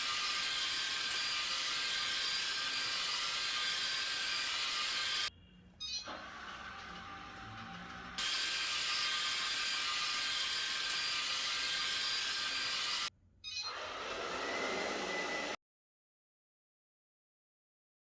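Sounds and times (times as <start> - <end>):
robot vacuum mop whirring: 13.7 - 15.6.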